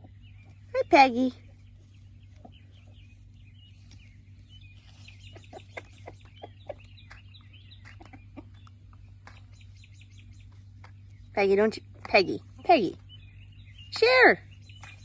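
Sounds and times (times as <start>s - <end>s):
chickens clucking and peeping: 0.0s - 15.0s
sharp pecking taps: 5.4s - 9.6s.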